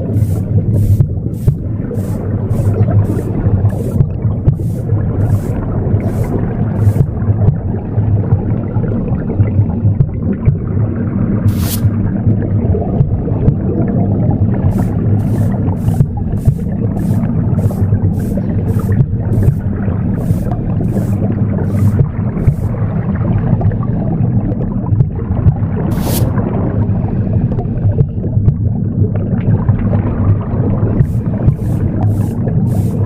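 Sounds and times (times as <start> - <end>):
broom sweeping strokes: 0.0 - 7.2, 11.5 - 12.0, 14.7 - 22.8, 25.9 - 26.4, 31.0 - 33.0
low whooshing womb rumble: 0.0 - 33.0.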